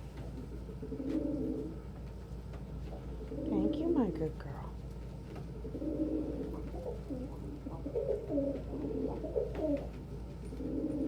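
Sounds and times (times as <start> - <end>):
pigeons cooing: 0.2 - 1.9, 5.5 - 11.0.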